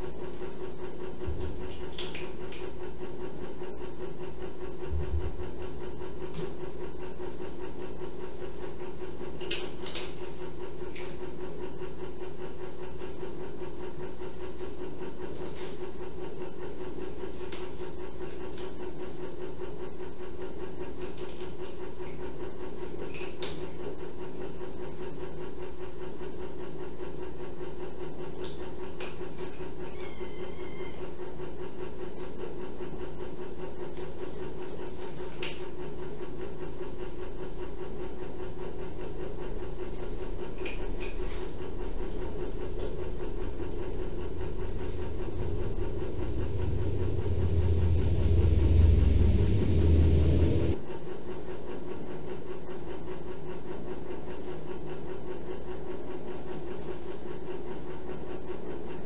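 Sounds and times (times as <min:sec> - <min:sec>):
room noise hum: 0:00.0 - 0:59.0
kitten chirp: 0:29.9 - 0:31.0
kittens squeaking: 0:29.9 - 0:31.0.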